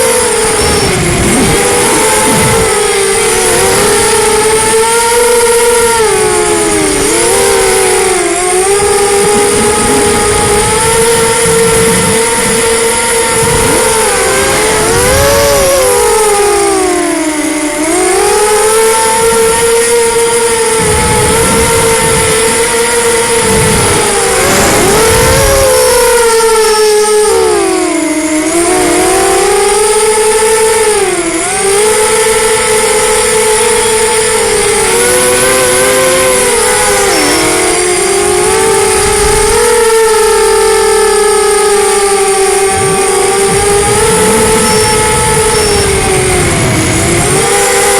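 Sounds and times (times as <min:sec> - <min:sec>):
quadcopter motors whining: 0:00.0 - 0:47.9
wind rumble on microphone: 0:00.0 - 0:47.9.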